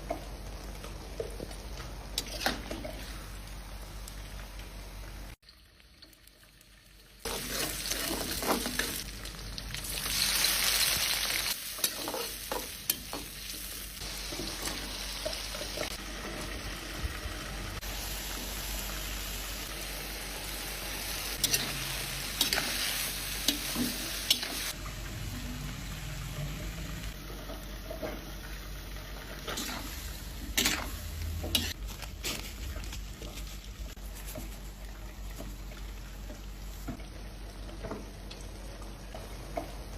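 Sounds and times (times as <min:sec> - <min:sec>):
food sizzling in a pan: 0:00.0 - 0:31.8.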